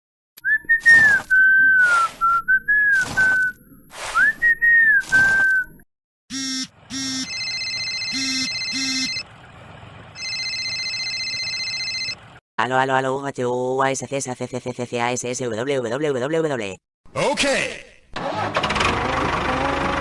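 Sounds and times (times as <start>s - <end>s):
whistled tune: 0.4s - 5.8s
electronic beeps: 8.1s - 9.2s.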